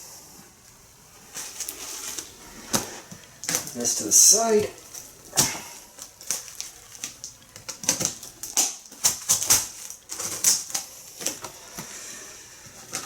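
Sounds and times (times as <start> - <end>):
packaging crinkling and scraping: 1.3 - 13.0.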